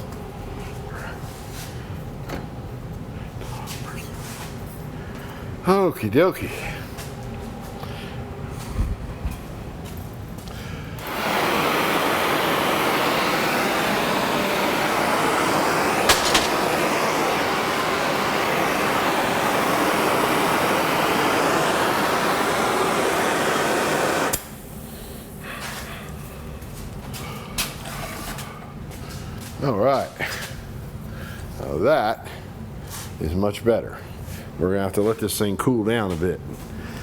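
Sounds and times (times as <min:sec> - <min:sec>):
gas torch hissing: 0:11.0 - 0:25.4
sharp click: 0:16.1 - 0:16.8.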